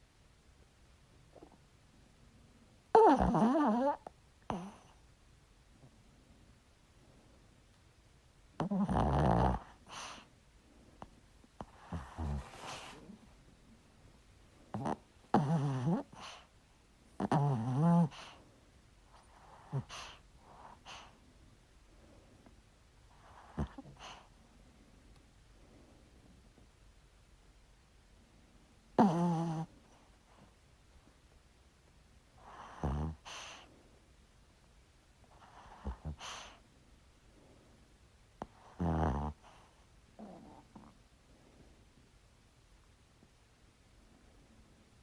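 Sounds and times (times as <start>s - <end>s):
small dog snoring: 1.3s - 1.6s, 2.9s - 5.0s, 8.6s - 10.3s, 11.6s - 13.2s, 14.7s - 16.5s, 17.2s - 18.4s, 19.1s - 21.2s, 23.1s - 24.3s, 29.0s - 30.5s, 32.4s - 33.7s, 35.3s - 36.6s, 38.4s - 41.0s
dog snorting: 8.6s - 10.2s, 11.6s - 13.2s, 14.7s - 16.5s, 19.3s - 21.2s, 23.1s - 24.3s, 32.4s - 33.7s, 35.3s - 36.6s, 38.4s - 40.9s
dog puffing breath: 11.6s - 13.2s.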